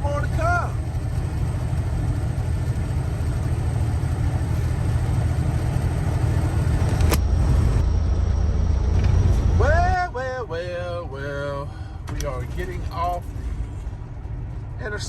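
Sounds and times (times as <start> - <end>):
road noise: 0.0 - 15.0
truck engine drone: 0.0 - 15.0.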